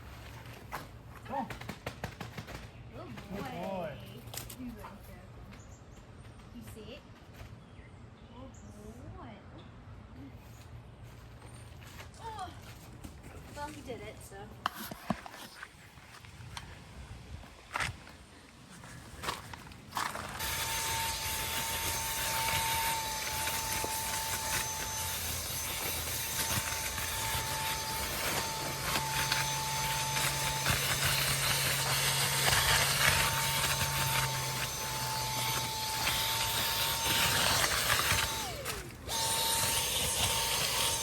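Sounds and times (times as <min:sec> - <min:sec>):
motor-driven machine whining: 0:20.2 - 0:41.0.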